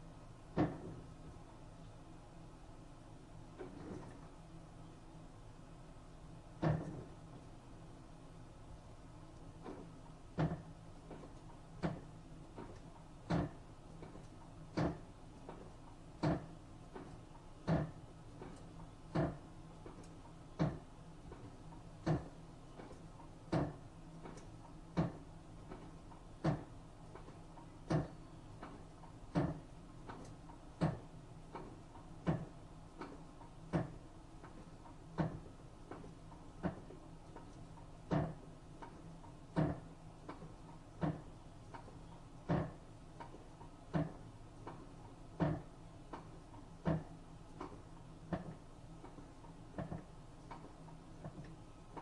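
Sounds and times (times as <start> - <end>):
washing machine spin hum: 0.0 - 52.0
washing machine knocking: 0.6 - 1.0, 6.6 - 7.1, 10.4 - 10.7, 13.3 - 13.6, 14.7 - 15.1, 16.2 - 17.1, 17.7 - 18.0, 19.1 - 19.4, 20.6 - 20.9, 22.0 - 22.3, 23.5 - 23.8, 24.9 - 25.2, 26.4 - 26.7, 27.9 - 28.2, 29.3 - 29.6, 30.8 - 31.1, 32.2 - 32.6, 33.7 - 34.0, 38.1 - 38.4, 39.6 - 39.9, 42.4 - 42.8, 43.9 - 44.2, 45.4 - 45.7, 46.8 - 47.1.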